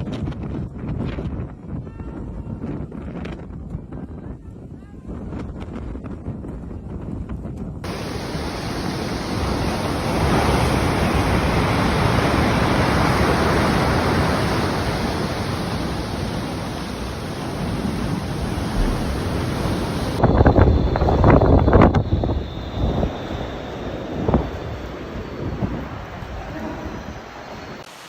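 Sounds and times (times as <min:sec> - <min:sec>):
loud steady rushing noise: 0:07.8 - 0:28.0.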